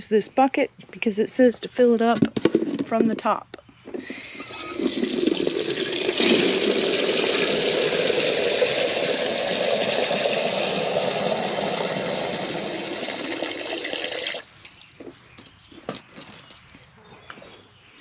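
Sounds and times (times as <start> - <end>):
water poured from a bucket: 4.4 - 15.0.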